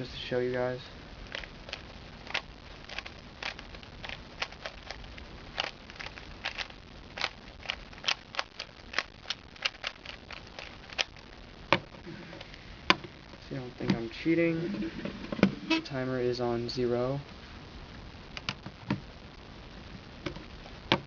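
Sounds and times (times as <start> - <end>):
puzzle cube plastic clicks: 1.3 - 11.2, 18.4 - 19.0.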